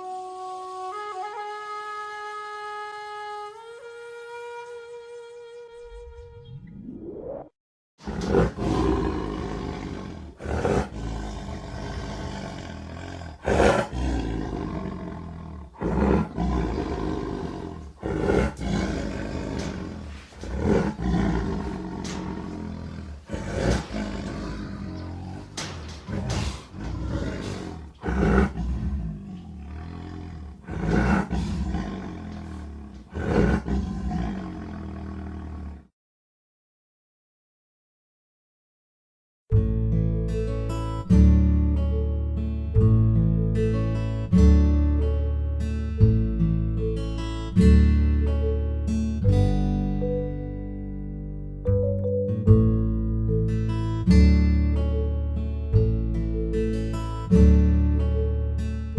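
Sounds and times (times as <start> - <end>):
tiger growling: 8.0 - 35.9.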